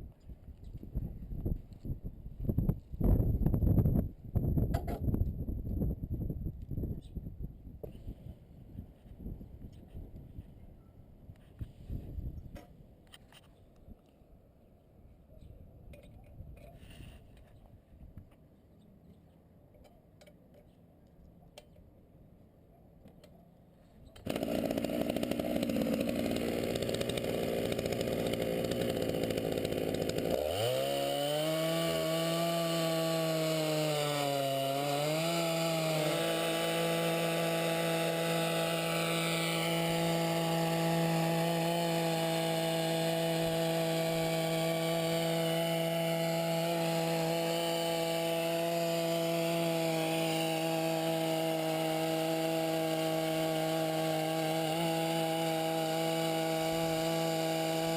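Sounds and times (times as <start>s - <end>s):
two-stroke chainsaw revving: 24.2s - 57.9s.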